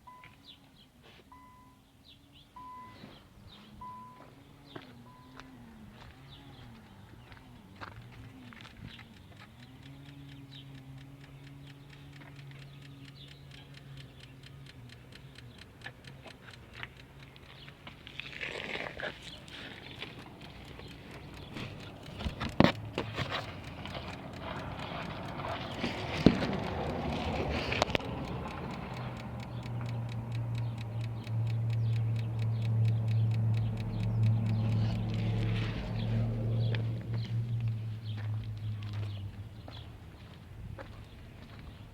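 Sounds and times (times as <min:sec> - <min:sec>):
rapid even clicking: 0:08.1 - 0:37.8
steady low hum: 0:19.3 - 0:38.5.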